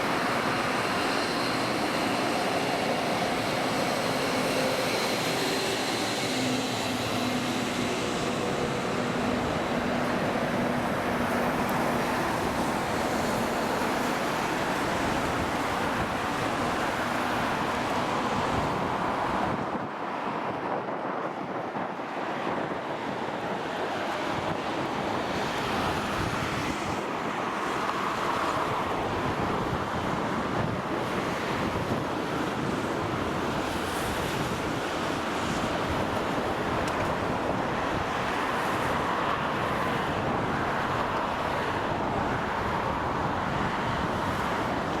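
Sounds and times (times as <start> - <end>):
river floodwater rushing: 0.0 - 20.2
wind rumbling on microphone: 0.0 - 45.0.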